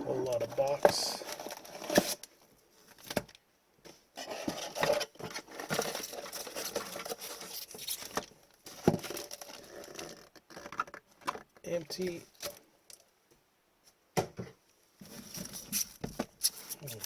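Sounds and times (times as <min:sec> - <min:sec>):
cardboard box and packs rustling: 0:00.0 - 0:03.4, 0:04.2 - 0:11.4, 0:15.0 - 0:17.0.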